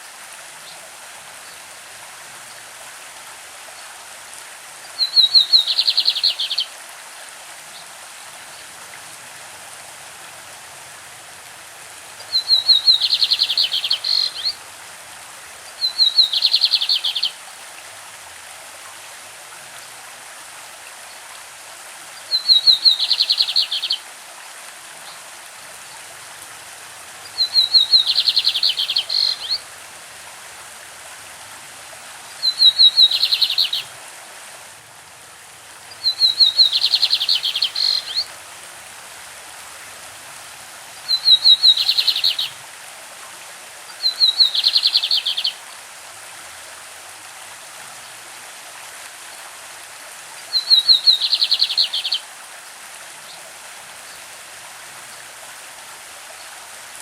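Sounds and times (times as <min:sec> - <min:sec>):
stream rushing: 0:00.0 - 0:57.0
bird singing rapid high notes: 0:36.0 - 0:38.2.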